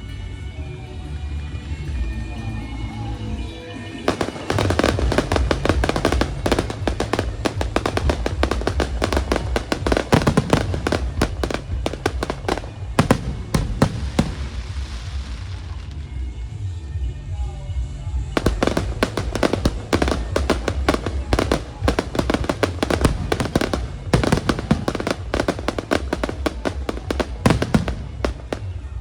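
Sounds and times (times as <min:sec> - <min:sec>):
fireworks crackling and banging: 0:04.0 - 0:16.1, 0:18.3 - 0:29.0.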